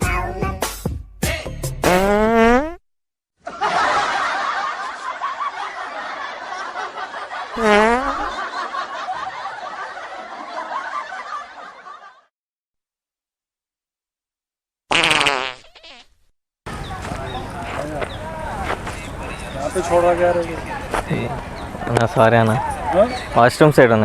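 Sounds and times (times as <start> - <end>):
people laughing: 3.4 - 12.3.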